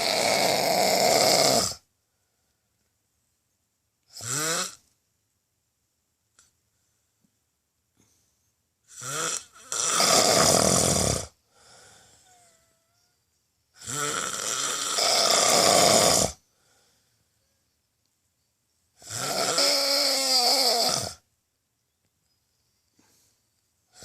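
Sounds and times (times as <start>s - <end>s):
person snoring heavily: 0.0s - 1.9s, 4.1s - 4.8s, 8.9s - 12.8s, 13.8s - 16.8s, 19.0s - 21.2s
faint breath: 2.0s - 2.9s, 6.6s - 8.6s, 11.4s - 13.2s, 16.4s - 17.8s, 22.6s - 24.0s.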